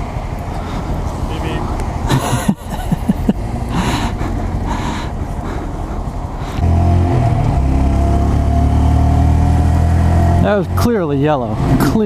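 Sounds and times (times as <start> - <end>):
road noise: 0.0 - 12.0
motorcycle engine revving: 6.6 - 12.0.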